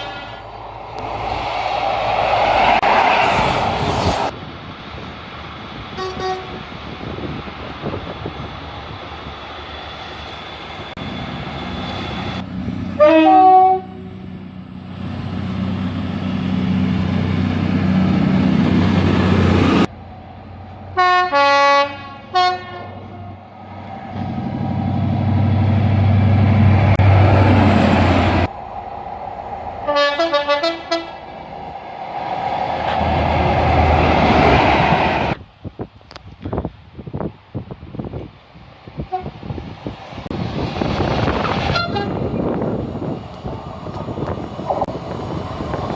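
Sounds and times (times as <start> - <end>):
train horn blasts: 0.0 - 0.4, 6.0 - 6.6, 13.0 - 14.2, 21.0 - 23.1, 29.8 - 31.2, 39.1 - 39.3, 41.6 - 42.3
train rumble: 0.0 - 45.9.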